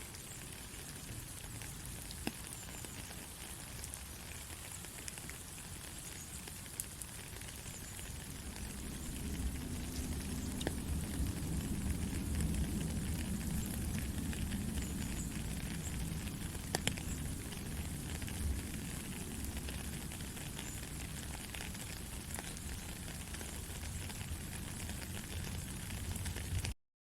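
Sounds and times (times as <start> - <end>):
steady rain falling: 0.0 - 26.8
low rumble: 8.2 - 16.7.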